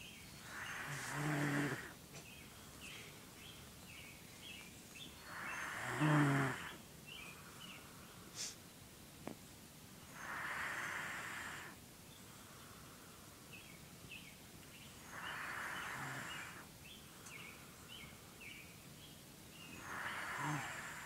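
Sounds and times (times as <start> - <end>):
breathy snoring: 0.5 - 2.0, 5.2 - 6.8, 10.2 - 11.8, 15.0 - 16.7, 19.8 - 21.0.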